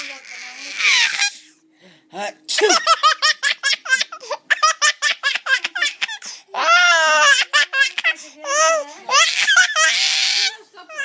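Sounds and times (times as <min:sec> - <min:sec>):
baby laughing: 0:02.6 - 0:11.0.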